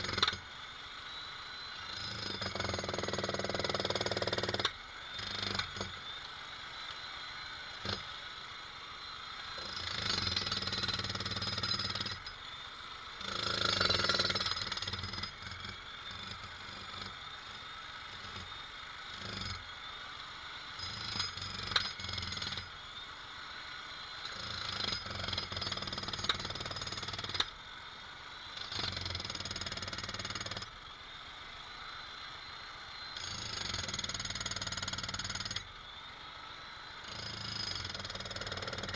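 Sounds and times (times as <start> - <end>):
jackhammer hammering: 0.0 - 0.4, 1.9 - 6.0, 7.8 - 8.1, 9.6 - 12.4, 13.2 - 18.5, 19.1 - 19.6, 20.8 - 22.8, 24.2 - 27.5, 28.6 - 30.7, 33.2 - 35.7, 37.0 - 38.9.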